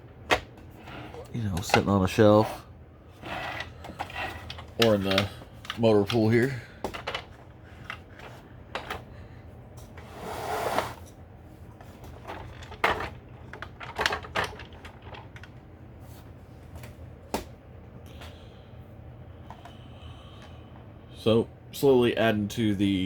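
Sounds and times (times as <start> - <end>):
plastic toy scraping slide: 2.4 - 5.1, 10.0 - 11.1.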